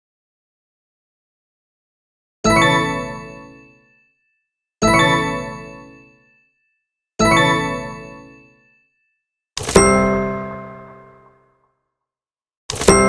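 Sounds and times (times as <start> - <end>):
notification chime ding: 9.7 - 11.4.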